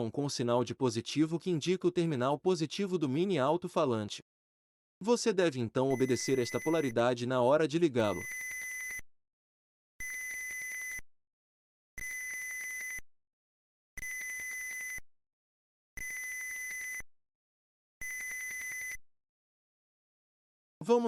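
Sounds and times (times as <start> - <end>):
piezo buzzer beeping: 5.9 - 7.0, 8.0 - 9.0, 10.0 - 11.0, 12.0 - 13.0, 14.0 - 15.0, 16.0 - 17.0, 18.0 - 19.0.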